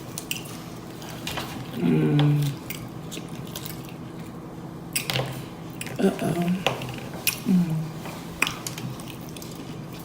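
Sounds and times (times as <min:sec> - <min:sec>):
person chewing and lip-smacking: 0:05.7 - 0:10.0.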